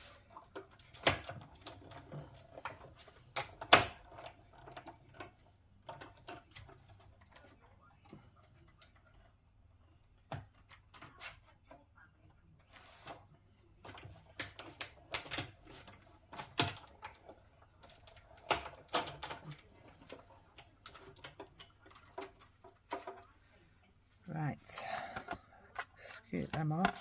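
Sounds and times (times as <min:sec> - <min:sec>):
plastic and metal clicks and knocks: 0:00.3 - 0:09.3, 0:13.8 - 0:23.4.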